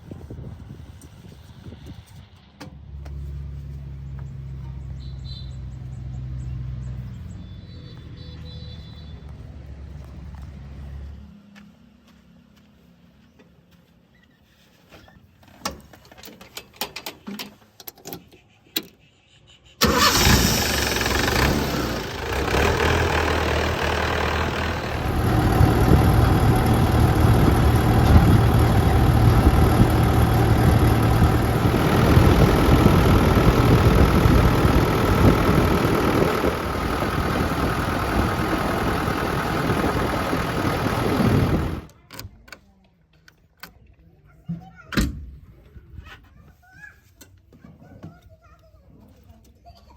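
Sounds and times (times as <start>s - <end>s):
heavy diesel engine rumbling: 19.8s - 42.0s.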